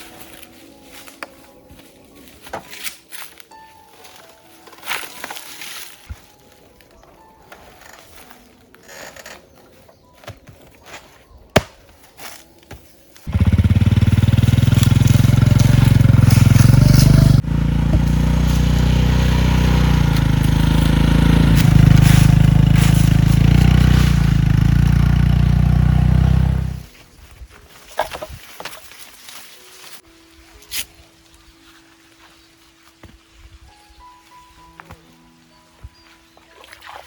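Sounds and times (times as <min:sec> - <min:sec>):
motor running: 0:13.3 - 0:26.8.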